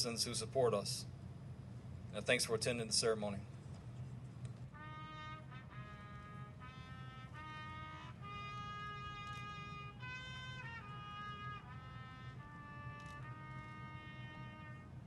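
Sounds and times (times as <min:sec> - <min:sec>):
steady low hum: 0:00.0 - 0:15.0
trumpet playing slow melody: 0:04.7 - 0:15.0.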